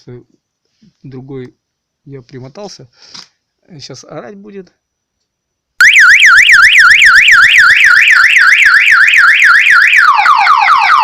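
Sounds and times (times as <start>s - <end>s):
car alarm siren warbling: 5.8s - 11.0s.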